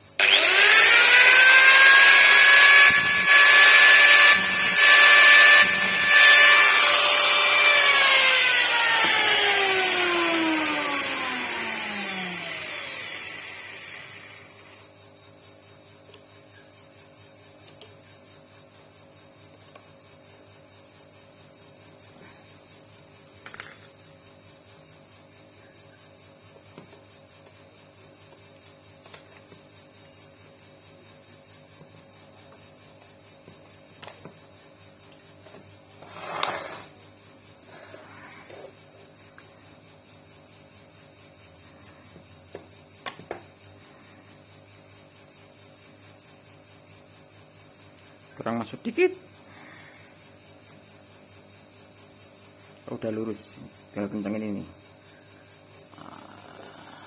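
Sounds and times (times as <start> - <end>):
tools and parts clicking: 0.2 - 11.1, 23.4 - 24.1
clattering metal scrape: 36.0 - 37.0.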